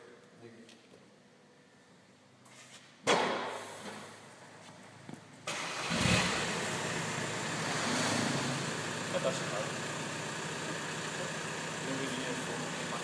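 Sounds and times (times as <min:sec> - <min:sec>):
diesel engine starting and running: 0:04.9 - 0:13.0.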